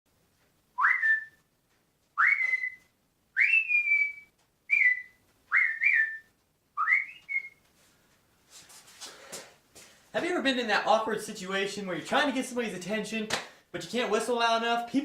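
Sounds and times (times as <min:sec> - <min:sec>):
shrill rising whistle blasts: 0:00.8 - 0:01.4, 0:02.2 - 0:07.6.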